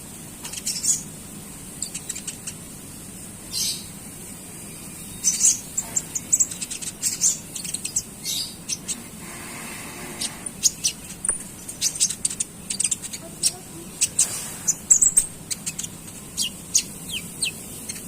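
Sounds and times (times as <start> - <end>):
songbird chirping sharp notes: 10.2 - 18.0.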